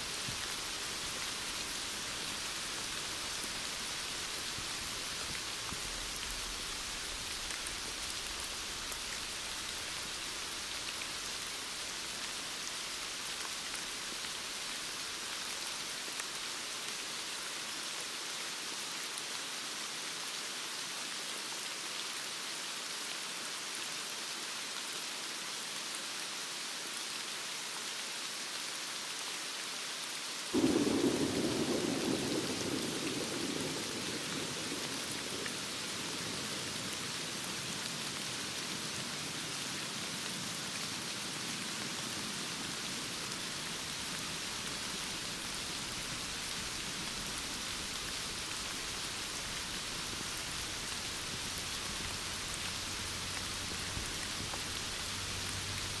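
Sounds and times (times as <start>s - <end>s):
heavy rain: 0.0s - 56.0s
thunder rumble: 30.6s - 37.0s.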